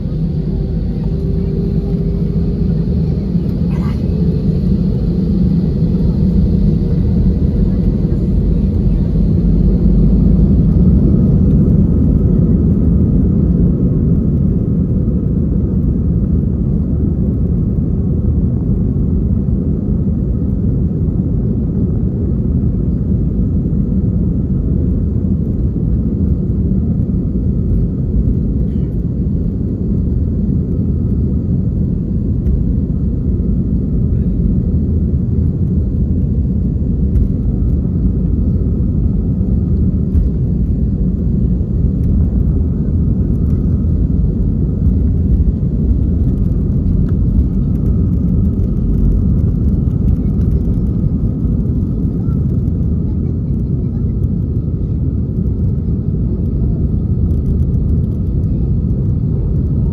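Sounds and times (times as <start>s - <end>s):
faint steady whine: 0.0s - 13.2s
airplane cabin rumble: 0.0s - 59.9s.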